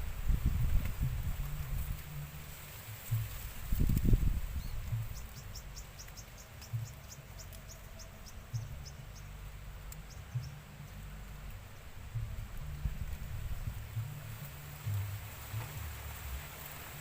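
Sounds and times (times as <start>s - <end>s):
low rumble: 7.6s - 16.9s.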